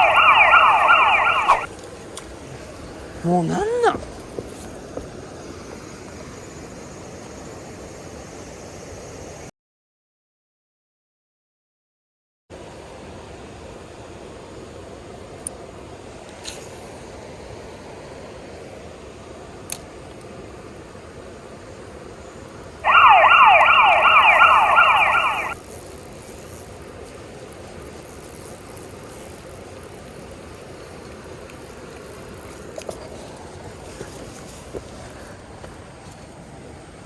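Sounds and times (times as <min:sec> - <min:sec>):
siren-like electronic warble: 0:00.0 - 0:01.7, 0:22.9 - 0:25.6
steady background hiss: 0:00.0 - 0:09.5, 0:12.6 - 0:37.0.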